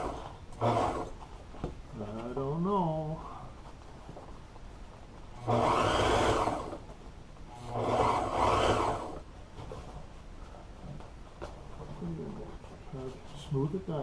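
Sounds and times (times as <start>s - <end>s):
sewing machine stitching: 0.0s - 1.2s, 5.4s - 6.8s, 7.6s - 9.2s.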